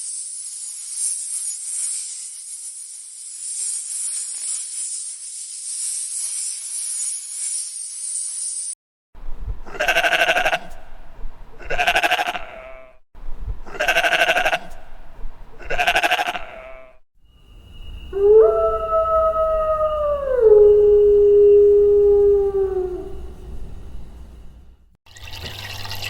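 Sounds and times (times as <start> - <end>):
quavering bleats: 9.7 - 10.7, 11.6 - 13.0, 13.7 - 14.7, 15.6 - 17.0
long howl dropping in pitch: 18.1 - 23.8.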